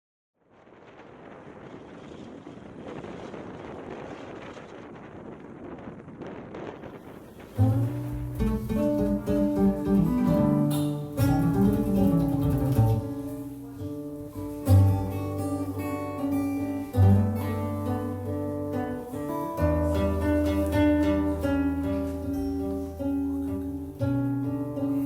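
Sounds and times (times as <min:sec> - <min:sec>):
guitar plucking and strumming: 0:07.5 - 0:25.0
held low bass notes: 0:07.6 - 0:25.0.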